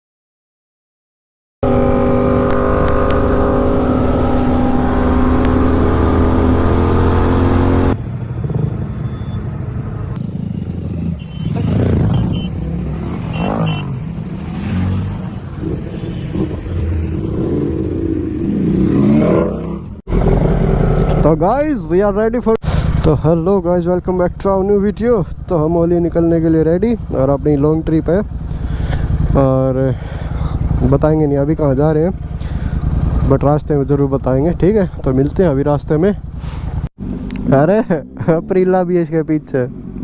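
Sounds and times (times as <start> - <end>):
motorcycle engine running: 1.6 - 8.0, 20.1 - 38.2.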